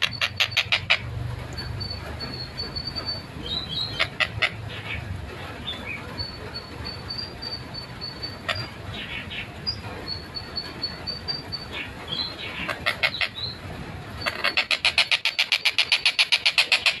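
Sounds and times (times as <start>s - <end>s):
kingfisher harsh calls: 0.0s - 1.1s, 1.8s - 4.9s, 11.3s - 13.6s, 14.2s - 17.0s.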